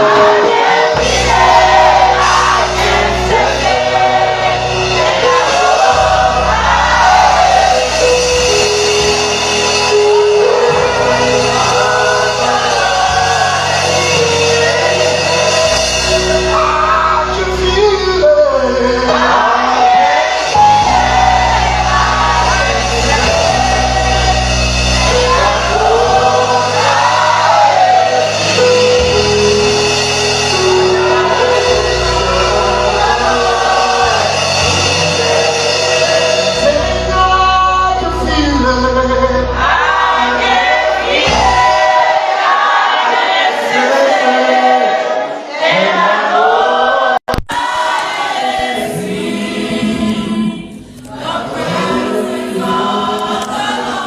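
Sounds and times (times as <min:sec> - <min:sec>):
bass line: 0:00.0 - 0:42.0
keyboard chords: 0:00.0 - 0:45.0
voices singing gospel: 0:00.0 - 0:54.0.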